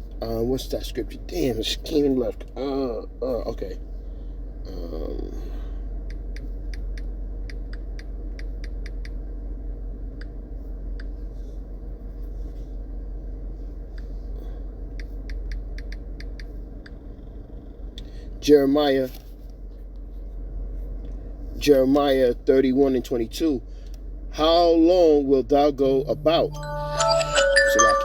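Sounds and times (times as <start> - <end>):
steady low hum: 0.0 - 28.0
keyboard typing: 26.6 - 28.0.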